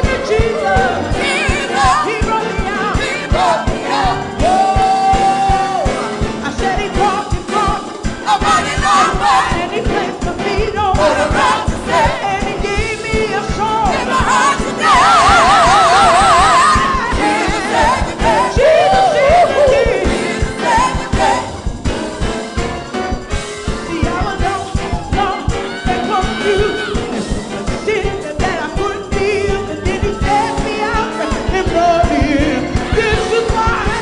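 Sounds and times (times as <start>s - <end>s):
lead singer with vibrato: 0.0s - 21.9s, 23.7s - 34.0s
gospel choir singing with band: 0.0s - 34.0s.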